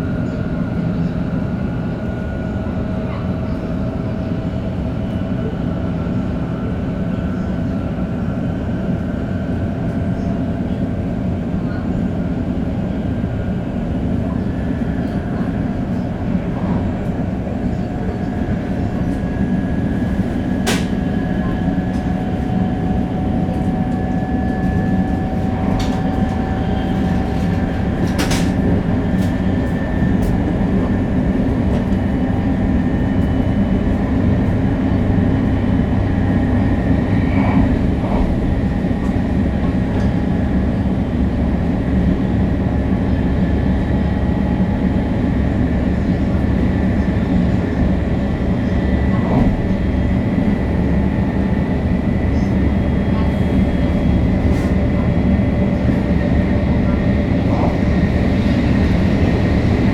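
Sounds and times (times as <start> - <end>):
train wheels rumbling: 12.8 - 59.9.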